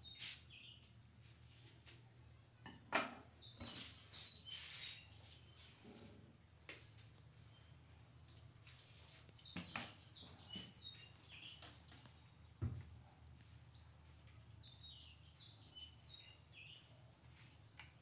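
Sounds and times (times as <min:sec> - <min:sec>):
songbird chirping: 0:03.4 - 0:06.1, 0:06.7 - 0:17.6.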